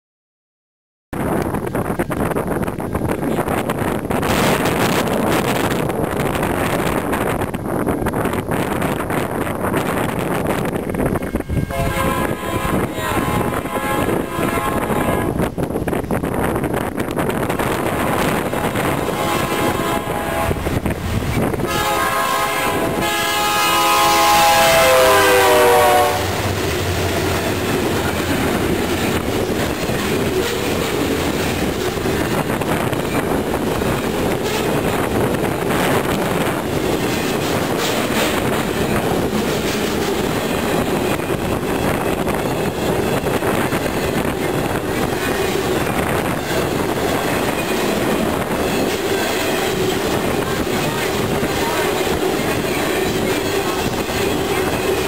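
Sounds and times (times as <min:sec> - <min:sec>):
freight train cars rolling: 0:01.2 - 0:55.0
locomotive air horn blast: 0:11.3 - 0:15.4, 0:17.6 - 0:20.7, 0:21.6 - 0:26.6.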